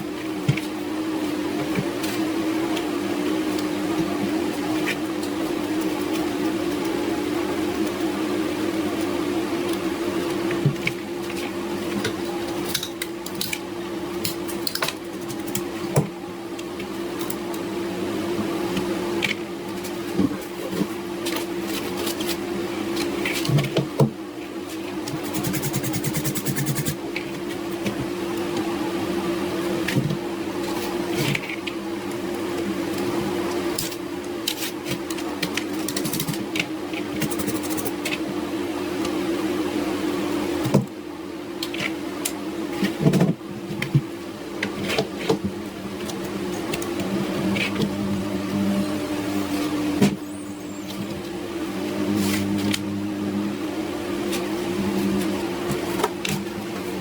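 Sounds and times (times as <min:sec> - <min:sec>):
small electric motor humming: 0:25.1 - 0:30.0, 0:30.6 - 0:38.3, 0:44.7 - 0:57.0.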